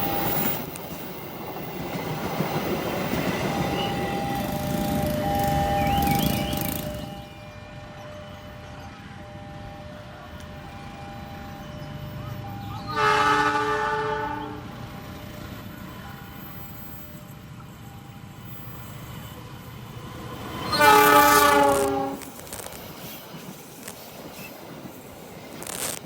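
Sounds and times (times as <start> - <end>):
train rumble: 0.0 - 26.0
train horn blasts: 12.8 - 14.8, 20.6 - 22.4.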